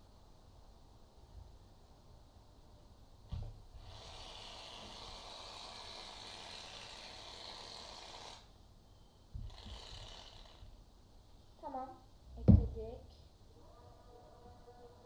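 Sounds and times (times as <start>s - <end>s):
knock: 12.4s - 12.8s.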